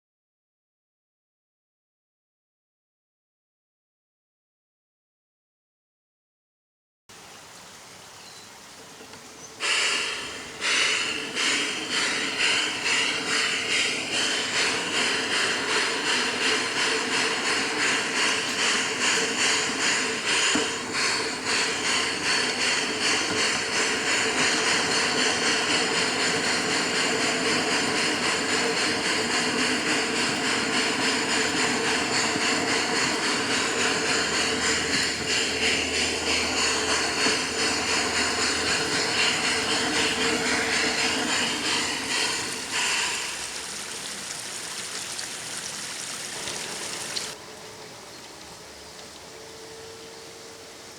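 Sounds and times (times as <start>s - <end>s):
steam hiss: 7.1s - 47.7s
model steam locomotive chuffing: 8.9s - 50.9s.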